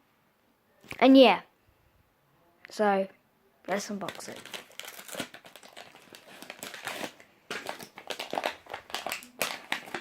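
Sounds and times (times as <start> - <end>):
packaging crinkling: 3.7 - 10.0.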